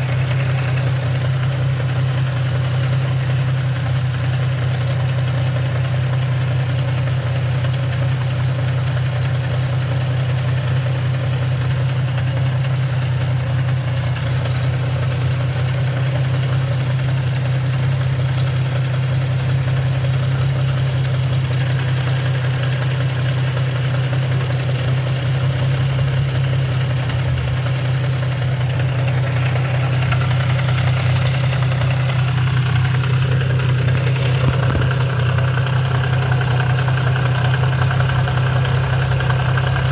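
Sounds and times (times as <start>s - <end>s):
car engine idling: 0.0s - 39.9s
transmission knocking: 18.0s - 39.9s.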